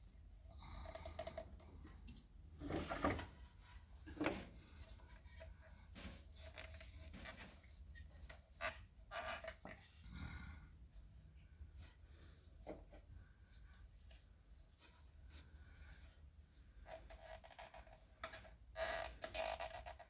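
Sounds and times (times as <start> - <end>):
rubber squeaks: 8.5 - 9.6, 16.9 - 20.0.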